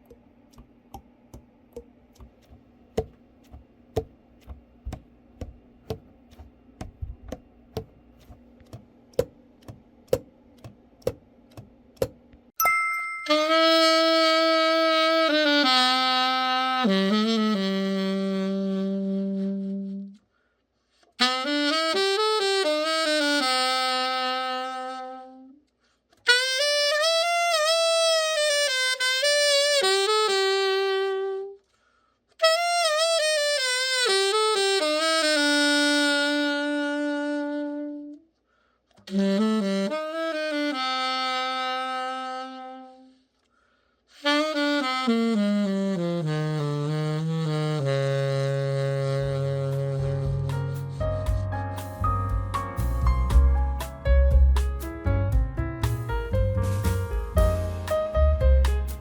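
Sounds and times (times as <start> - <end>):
solo alto saxophone: 13.3 - 20.3, 21.0 - 43.5, 44.1 - 51.7, 57.3 - 58.5.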